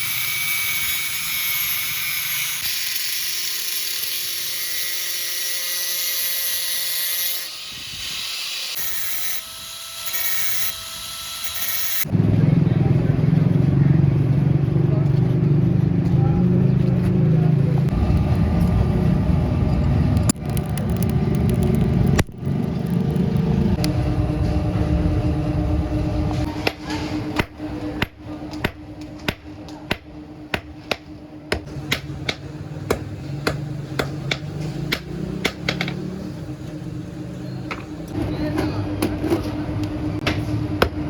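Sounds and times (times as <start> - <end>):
steady low hum: 12.0 - 41.0
dense low rumble: 12.1 - 26.6.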